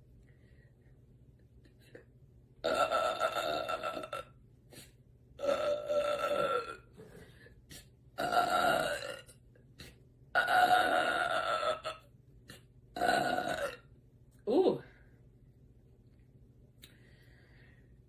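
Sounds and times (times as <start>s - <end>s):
woman belching: 2.6s - 4.4s, 5.4s - 6.9s, 8.2s - 9.4s, 10.3s - 12.1s, 13.0s - 13.9s.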